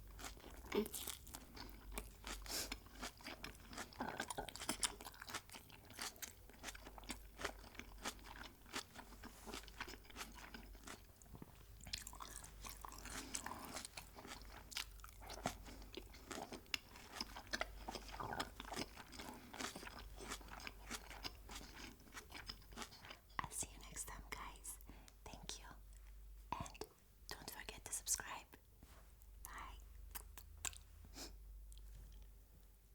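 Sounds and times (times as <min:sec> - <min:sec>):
crispy chewing crunches: 0:00.1 - 0:23.2, 0:30.1 - 0:30.9.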